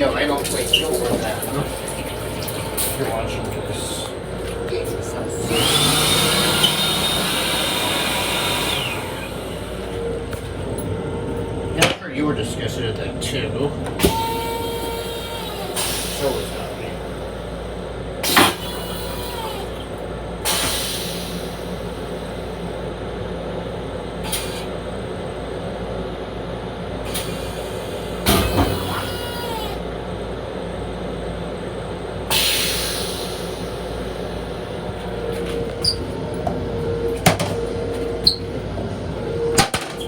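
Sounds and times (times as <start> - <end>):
steady hum: 0.0 - 18.2, 24.9 - 40.0
railcar running noise: 0.0 - 40.0
clunks: 9.8 - 12.1, 13.8 - 16.4, 34.7 - 40.0
air hissing: 32.3 - 34.9.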